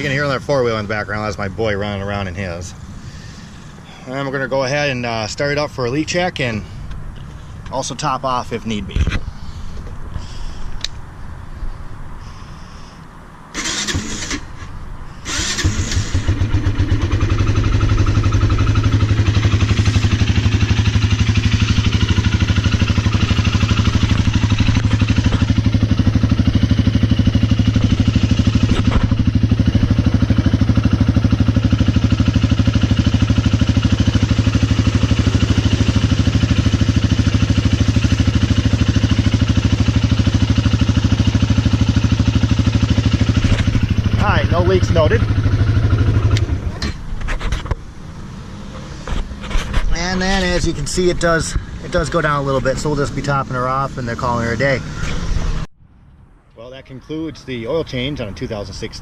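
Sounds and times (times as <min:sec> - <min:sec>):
engine cranking: 0:13.6 - 0:14.6, 0:15.2 - 0:25.5
engine idling: 0:15.2 - 0:46.9.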